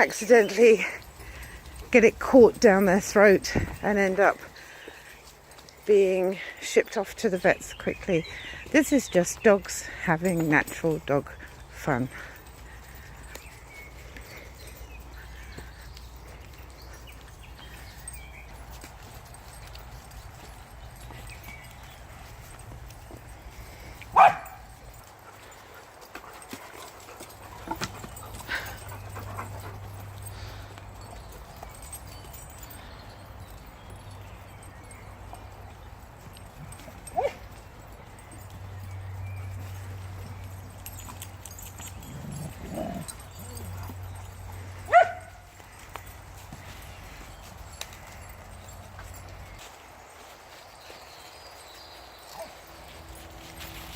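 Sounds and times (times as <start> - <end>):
dog barking: 24.2 - 24.6, 44.9 - 45.4.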